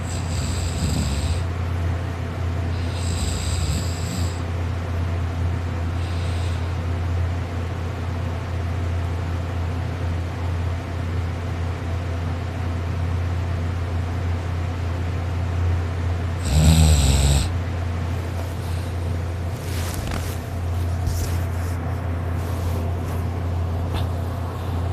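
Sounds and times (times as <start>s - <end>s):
person snoring: 0.0s - 1.5s, 2.7s - 4.4s, 6.0s - 6.8s, 16.4s - 17.6s
steady low hum: 0.0s - 24.9s.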